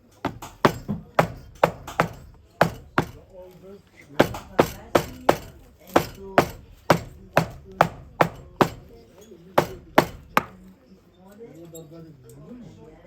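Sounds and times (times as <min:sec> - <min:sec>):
hammer blows: 0:00.0 - 0:03.4, 0:04.2 - 0:09.0, 0:09.6 - 0:10.6.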